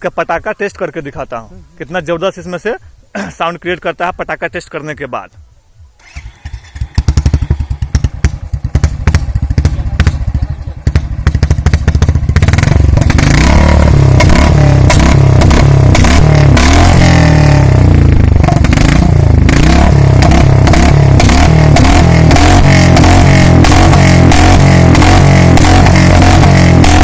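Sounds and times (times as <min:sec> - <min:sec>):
motorcycle engine revving: 0:06.0 - 0:27.0
exhaust pops and crackles: 0:07.9 - 0:17.1, 0:18.2 - 0:27.0.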